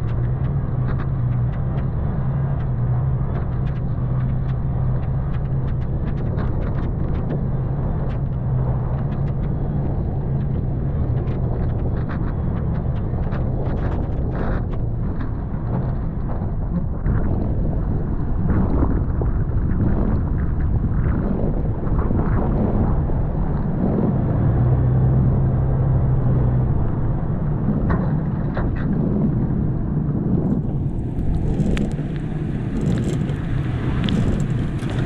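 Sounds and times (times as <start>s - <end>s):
suv engine at low speed: 21.6s - 35.0s
clicks and knocks from trail: 30.4s - 35.0s.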